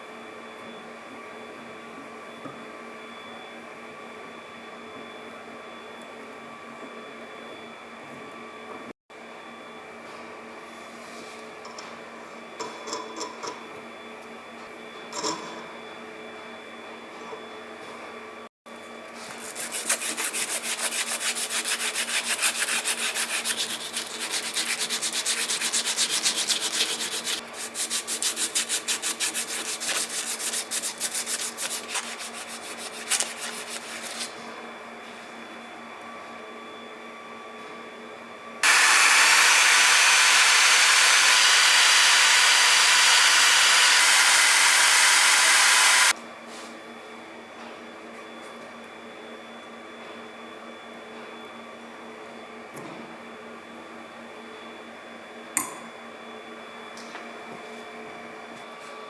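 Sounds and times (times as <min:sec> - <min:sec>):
hand sanding strokes: 0:19.2 - 0:34.4, 0:38.6 - 0:46.1.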